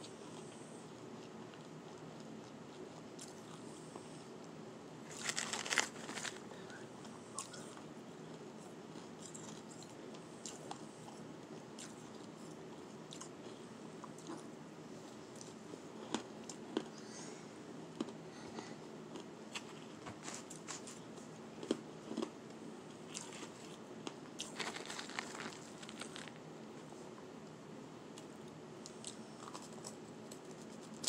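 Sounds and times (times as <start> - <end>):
crunching shaved ice: 5.1 - 6.4, 24.4 - 26.4
ice crackling while chewed: 5.1 - 6.8, 7.4 - 10.8, 23.1 - 26.4, 28.8 - 31.0.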